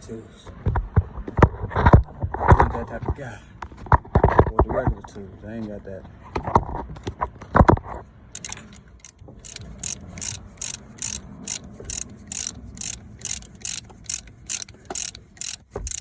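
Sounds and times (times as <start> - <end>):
ratchet wrench clicking: 8.4 - 16.0.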